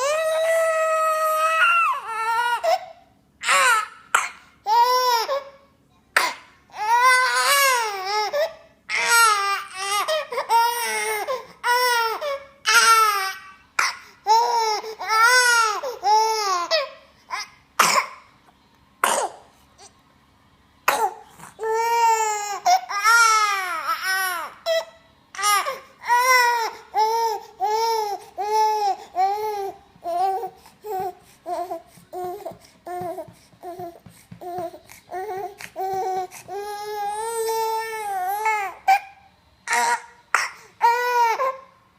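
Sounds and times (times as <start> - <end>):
child coughing: 4.1 - 4.5, 6.1 - 6.5, 17.8 - 18.2, 19.0 - 19.4.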